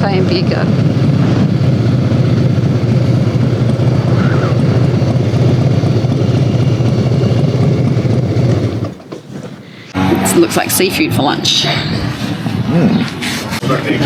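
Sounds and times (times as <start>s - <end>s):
wind noise: 0.0s - 9.0s
motorcycle engine running: 0.0s - 12.8s
road noise: 0.0s - 14.0s.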